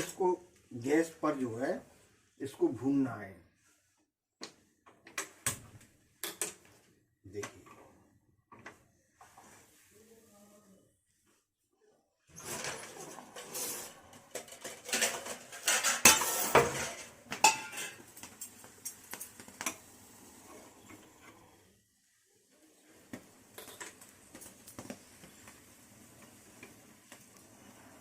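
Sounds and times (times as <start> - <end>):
metal utensils clattering: 12.4 - 18.1.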